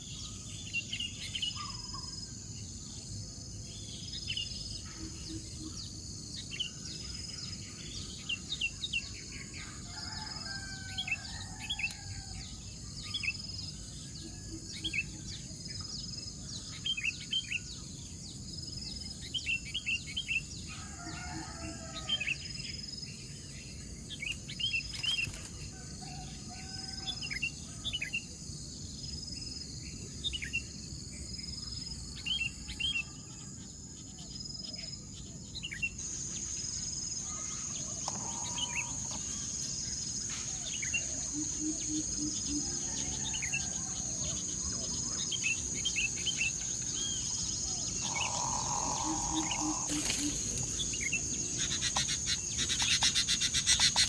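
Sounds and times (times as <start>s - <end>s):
high insect drone: 0.0s - 54.0s
birds chirping: 35.3s - 54.0s
lower longer bird calls: 37.2s - 39.5s, 40.5s - 54.0s.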